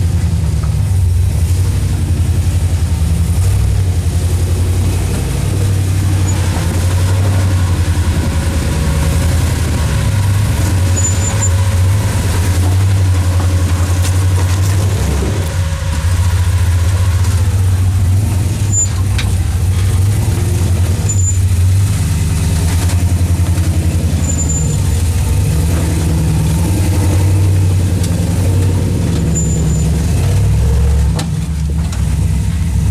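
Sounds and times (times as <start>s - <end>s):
engine working at low speed: 0.0s - 32.9s
short high squeaks: 10.8s - 11.7s, 18.6s - 19.4s, 21.0s - 21.6s, 24.1s - 25.0s, 29.1s - 30.1s.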